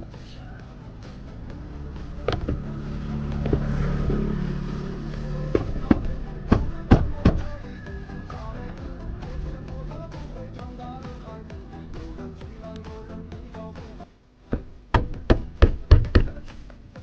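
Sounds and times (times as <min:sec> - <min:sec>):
hand knocking on door panel: 0:02.3 - 0:02.7, 0:05.6 - 0:07.5, 0:14.5 - 0:16.4.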